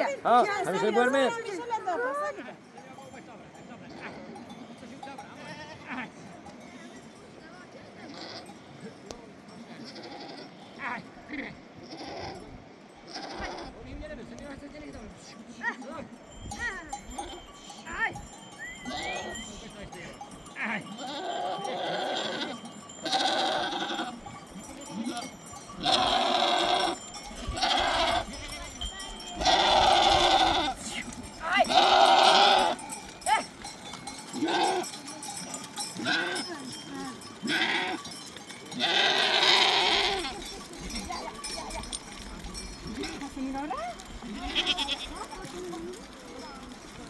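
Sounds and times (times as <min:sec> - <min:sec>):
faint bleats from flock: 0:03.8 - 0:04.5, 0:05.4 - 0:06.1, 0:08.0 - 0:08.7, 0:09.8 - 0:12.5, 0:13.1 - 0:13.8, 0:20.6 - 0:24.3, 0:24.9 - 0:32.8, 0:34.4 - 0:35.0, 0:36.0 - 0:36.6, 0:37.4 - 0:38.1, 0:38.7 - 0:40.5, 0:44.2 - 0:45.4
sheep bleating: 0:03.9 - 0:04.5, 0:08.1 - 0:08.5, 0:09.8 - 0:10.6, 0:13.1 - 0:13.8, 0:18.5 - 0:19.6, 0:20.5 - 0:33.6, 0:34.2 - 0:35.0, 0:35.8 - 0:38.1, 0:38.7 - 0:41.5, 0:43.9 - 0:45.6.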